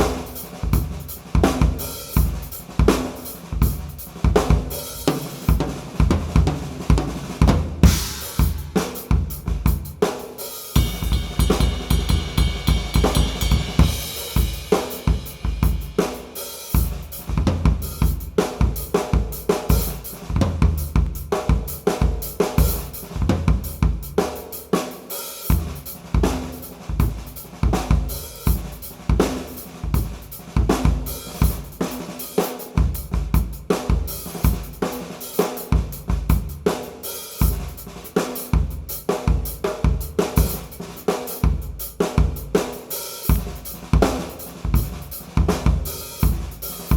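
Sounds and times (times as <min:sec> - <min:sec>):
drum kit groove: 0:00.0 - 0:46.9
heavy cymbal wash: 0:07.8 - 0:09.4, 0:10.4 - 0:18.4.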